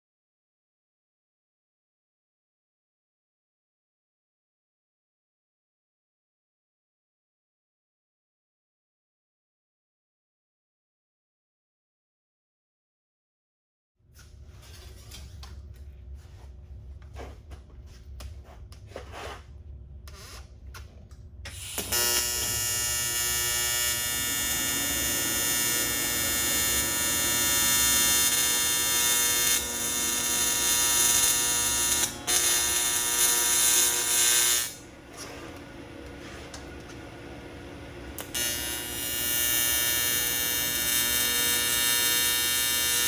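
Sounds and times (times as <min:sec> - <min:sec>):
welding arc buzzing: 0:21.5 - 0:43.0
low hum: 0:21.8 - 0:34.1, 0:34.7 - 0:39.1.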